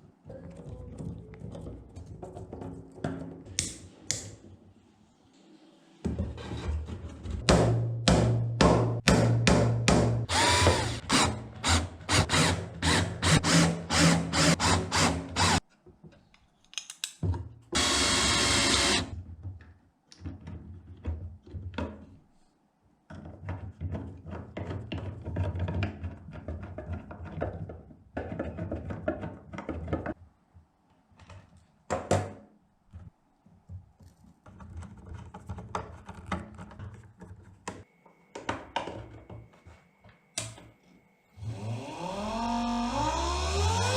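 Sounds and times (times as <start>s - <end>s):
tools scraping and knocking on wood: 6.0s - 7.7s, 33.7s - 40.7s
power drill running: 10.3s - 15.6s, 17.8s - 19.1s, 41.4s - 43.9s.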